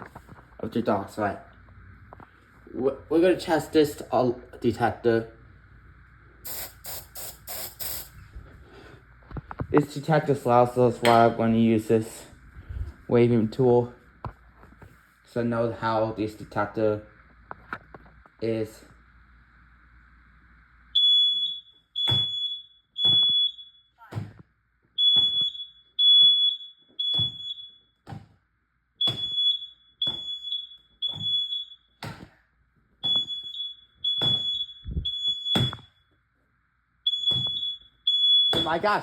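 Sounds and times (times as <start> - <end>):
smoke alarm beeping: 20.9 - 24.1, 25.0 - 28.1, 29.0 - 32.1, 33.0 - 36.2, 37.0 - 39.0.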